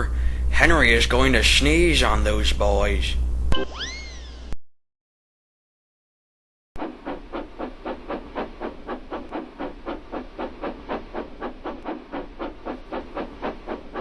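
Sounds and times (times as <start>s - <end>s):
steam locomotive chuffing: 6.8s - 14.0s.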